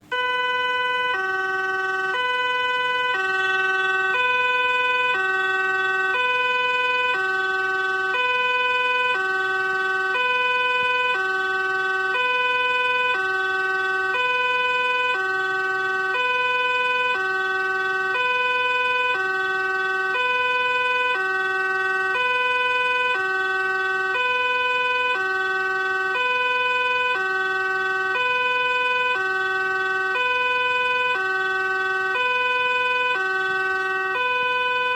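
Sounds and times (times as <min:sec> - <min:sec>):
two-tone police siren: 0:00.0 - 0:34.9.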